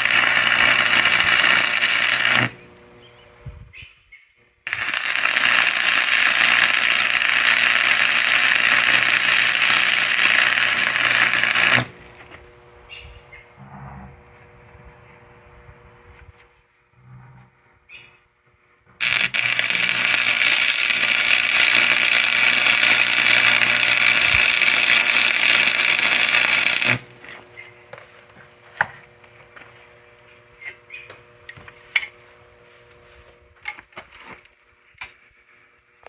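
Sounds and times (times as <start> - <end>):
arc welding hiss: 0.0 - 3.0, 4.7 - 12.4, 19.0 - 27.5.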